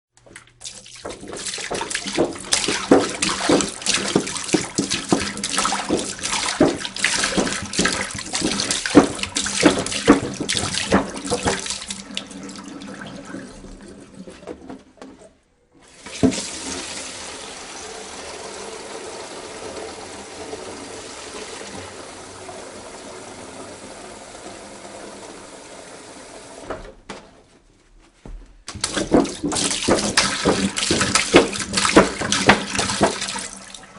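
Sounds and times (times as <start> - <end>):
water pouring from a jug: 0.2 - 14.6, 28.7 - 33.9.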